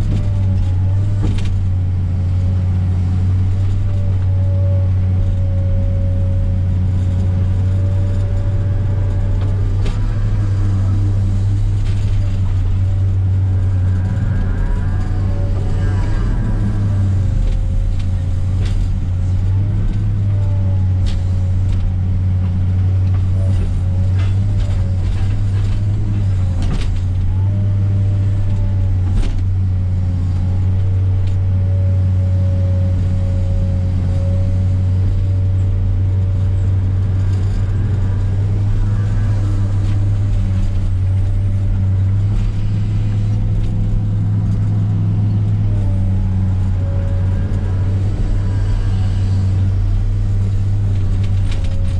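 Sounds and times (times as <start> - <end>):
heavy diesel engine running: 0.0 - 51.9
wavering mid-pitched whine: 3.3 - 20.0.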